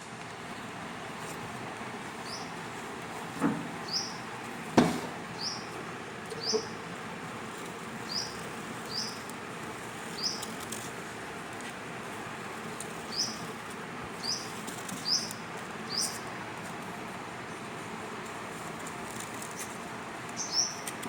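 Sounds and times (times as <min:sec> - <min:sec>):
small bird chirping: 0:02.2 - 0:02.6, 0:03.8 - 0:04.3, 0:05.3 - 0:06.9, 0:08.0 - 0:09.4, 0:10.0 - 0:10.9, 0:13.1 - 0:13.5, 0:14.2 - 0:16.3, 0:19.4 - 0:21.0
sharp knocks: 0:03.4 - 0:03.8, 0:04.8 - 0:05.3.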